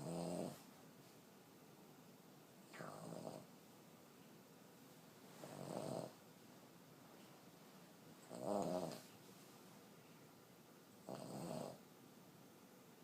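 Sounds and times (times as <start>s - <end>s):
dog snoring: 0.0s - 0.7s, 2.7s - 3.5s, 5.4s - 6.2s, 8.2s - 9.1s, 11.0s - 11.8s.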